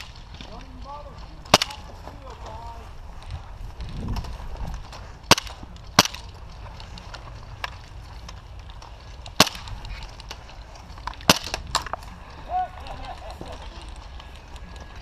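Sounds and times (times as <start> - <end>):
airsoft gun shots: 1.5 - 1.9, 5.2 - 6.3, 9.4 - 9.8, 11.2 - 11.9.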